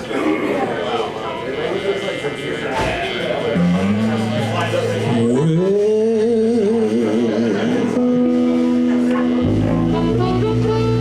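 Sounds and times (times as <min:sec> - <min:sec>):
wavering held note: 0:03.6 - 0:06.1
live blues band playing: 0:03.6 - 0:11.0
bass and drums: 0:08.2 - 0:11.0.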